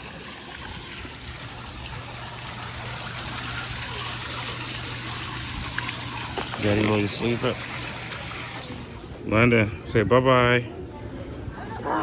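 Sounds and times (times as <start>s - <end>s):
hiss of running water: 0.0s - 9.2s.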